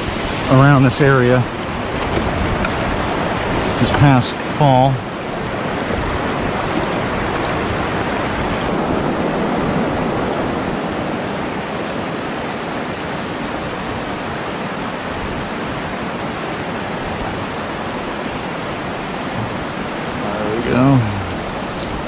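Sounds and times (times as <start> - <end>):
creek water rushing: 0.0 - 22.0
brief high hiss: 8.3 - 8.8.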